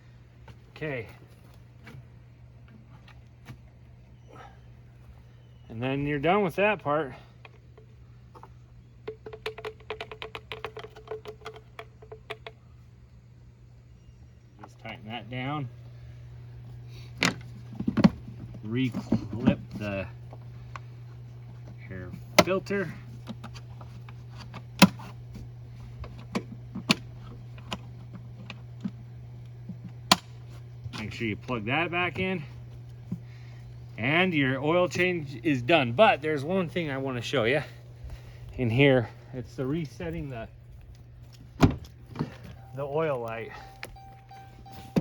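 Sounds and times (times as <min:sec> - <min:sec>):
steady low hum: 0:00.0 - 0:45.0.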